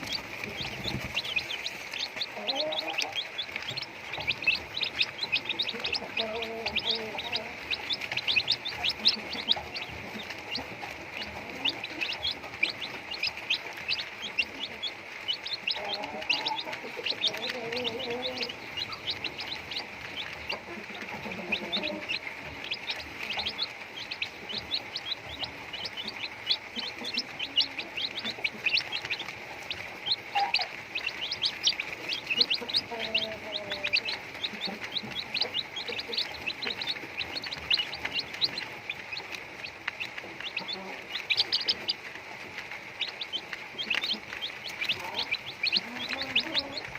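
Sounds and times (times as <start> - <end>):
rapid high-pitched chirping: 0.0 - 20.6, 40.4 - 42.0
chickens clucking: 0.0 - 46.9.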